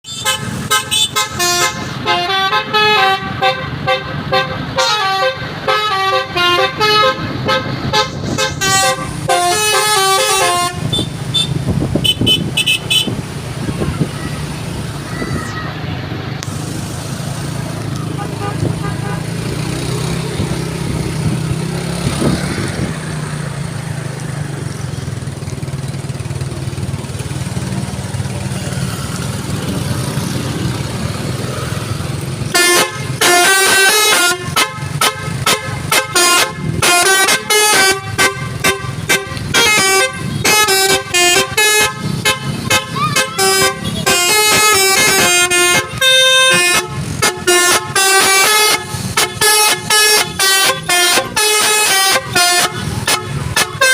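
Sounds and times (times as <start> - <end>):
musical horn playing a tune: 0.1 - 13.2, 32.5 - 53.9.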